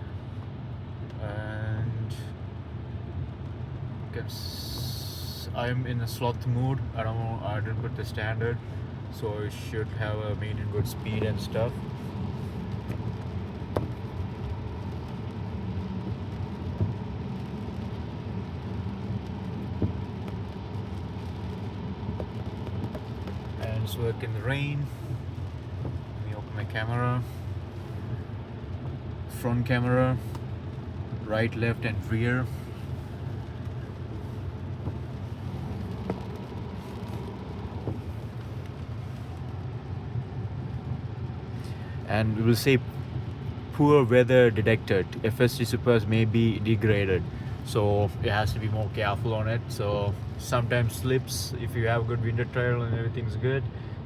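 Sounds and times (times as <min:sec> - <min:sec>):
road and tyre rumble: 0:00.0 - 0:54.0.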